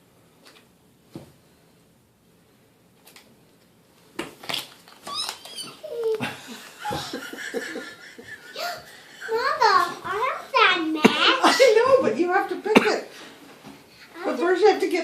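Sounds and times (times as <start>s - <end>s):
high-pitched squealing cries: 5.0s - 6.2s
laughter: 6.2s - 8.9s.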